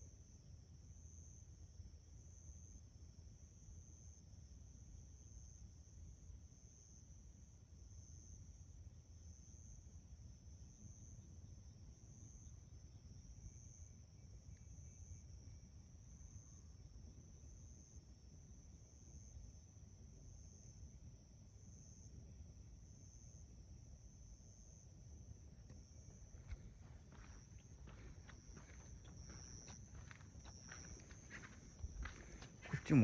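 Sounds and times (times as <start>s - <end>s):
insects trilling: 24.7s - 33.0s
pulsing insect trill: 26.0s - 33.0s.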